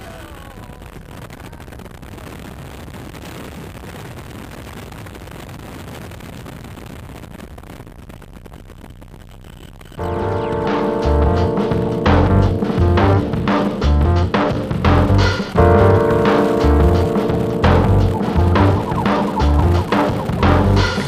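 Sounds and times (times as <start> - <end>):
loud music with drums: 10.1 - 21.0.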